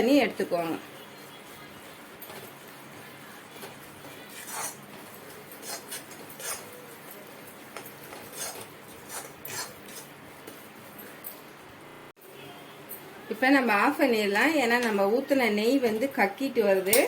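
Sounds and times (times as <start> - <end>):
metal spoon scraping a pan: 4.3 - 4.8, 8.2 - 10.1.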